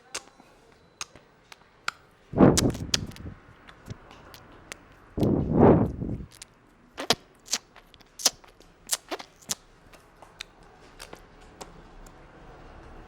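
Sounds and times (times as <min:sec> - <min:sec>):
hands slapping and snapping: 0:01.9 - 0:05.3.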